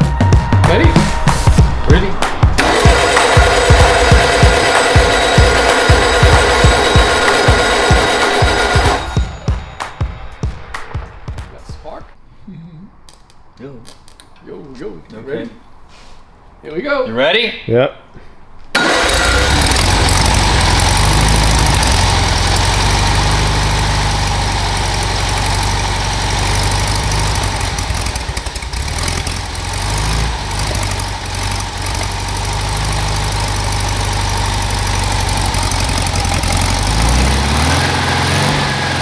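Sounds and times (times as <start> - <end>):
air-cooled car engine running: 0.7 - 9.4, 18.7 - 39.0.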